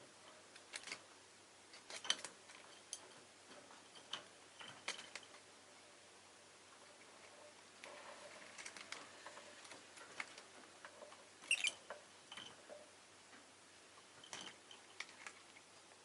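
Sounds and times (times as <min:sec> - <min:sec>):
lovebird high chirps: 0:11.4 - 0:11.8.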